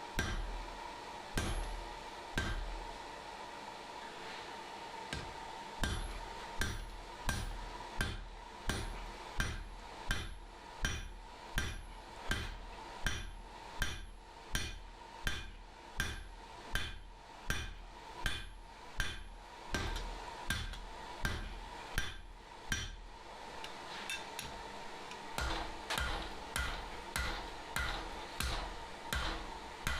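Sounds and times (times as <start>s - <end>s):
faint steady hum: 0.0s - 29.9s
hammer ringing on anvil: 25.4s - 29.9s.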